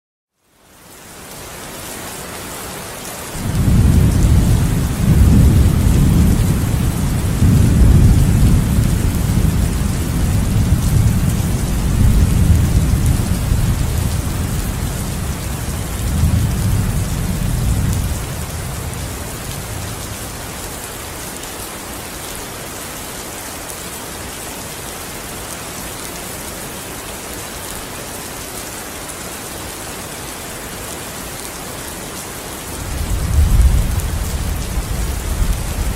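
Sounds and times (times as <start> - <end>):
steady rain hiss: 0.4 - 35.9
low rolling thunder rumble: 3.4 - 20.4, 32.8 - 35.9.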